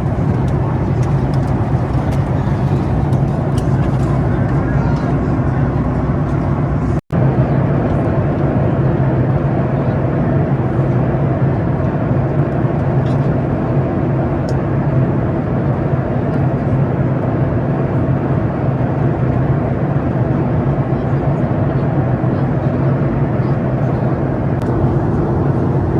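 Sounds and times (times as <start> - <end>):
low hum: 0.0 - 20.2, 22.3 - 25.9
airplane cabin engine noise: 0.0 - 25.9.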